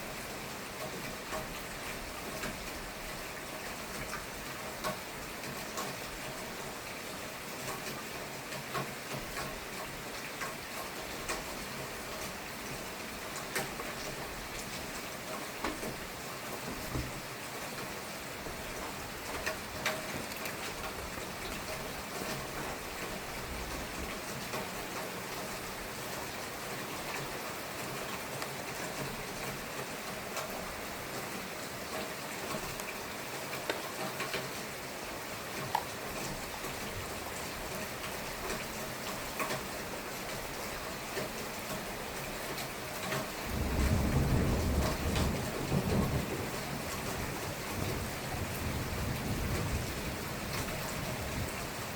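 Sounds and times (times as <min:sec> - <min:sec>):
steady rain falling: 0:00.0 - 0:51.9
water drips: 0:17.8 - 0:26.4, 0:35.4 - 0:40.4.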